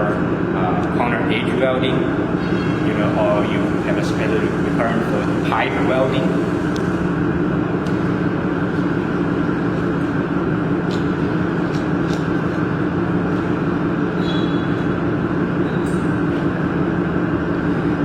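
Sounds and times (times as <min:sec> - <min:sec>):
mechanical hum with rushing: 0:00.0 - 0:18.0.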